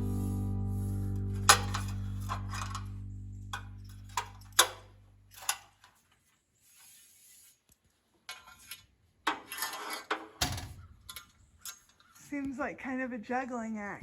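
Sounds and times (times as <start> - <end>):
music chord ringing: 0.0 - 4.6.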